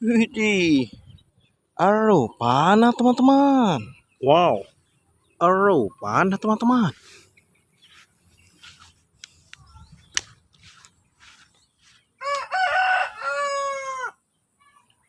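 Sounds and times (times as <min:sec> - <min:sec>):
rooster crowing: 0:12.2 - 0:14.2.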